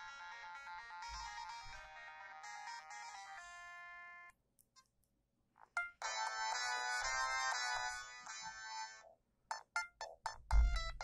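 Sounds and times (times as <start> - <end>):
mobile phone ringtone melody: 0.0 - 4.3, 5.8 - 9.1.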